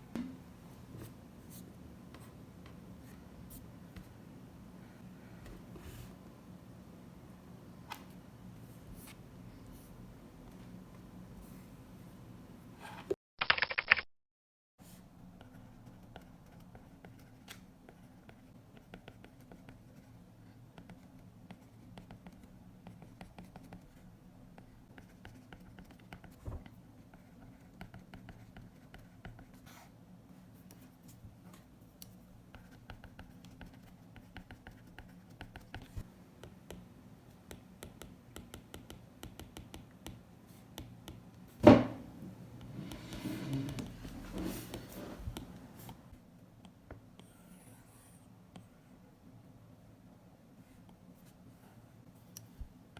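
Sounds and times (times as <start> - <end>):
louder knock: 41.6 - 42.1.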